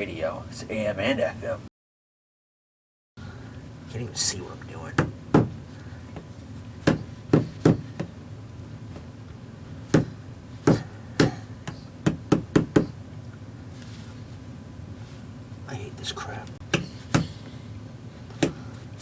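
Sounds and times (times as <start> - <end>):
hammer tapping: 9.9 - 12.9.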